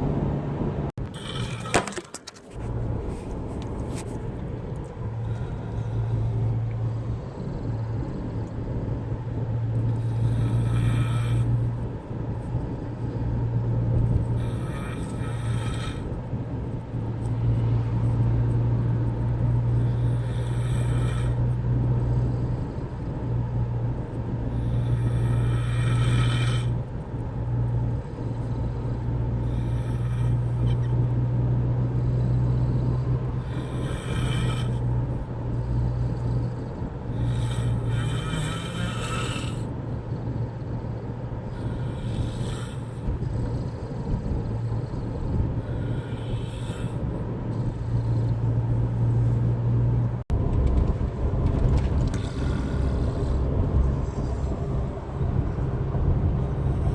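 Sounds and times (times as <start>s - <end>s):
steady low hum: 0.0s - 56.9s
man snoring loudly: 1.0s - 1.8s, 9.6s - 11.7s, 14.2s - 16.1s, 19.5s - 23.1s, 24.4s - 26.8s, 28.0s - 49.2s, 52.2s - 54.5s.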